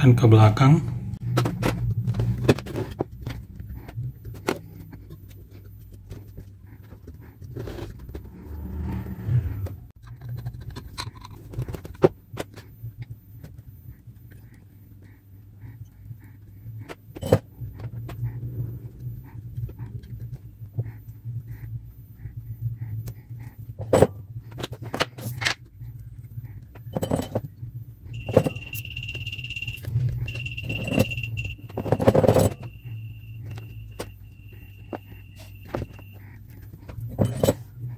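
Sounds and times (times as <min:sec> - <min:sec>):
low steady hum: 0:00.0 - 0:37.9
rustling and scraping: 0:01.3 - 0:12.7, 0:28.1 - 0:37.9
steady high whine: 0:25.4 - 0:37.5.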